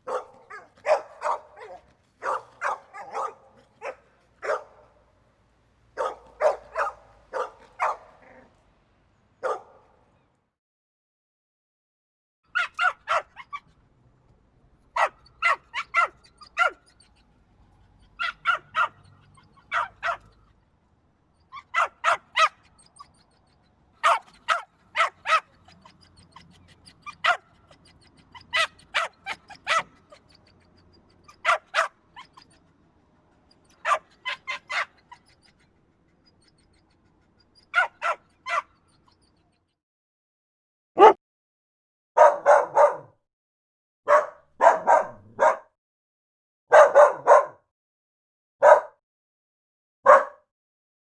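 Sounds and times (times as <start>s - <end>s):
dog barking: 0.0s - 5.0s, 5.9s - 8.5s, 9.4s - 10.0s, 12.5s - 13.7s, 15.0s - 17.1s, 18.1s - 20.4s, 21.6s - 23.3s, 24.0s - 30.4s, 31.2s - 32.6s, 33.6s - 35.5s, 37.6s - 39.3s, 41.0s - 41.2s, 42.2s - 43.2s, 44.1s - 45.8s, 46.7s - 47.6s, 48.6s - 49.0s, 50.0s - 50.5s.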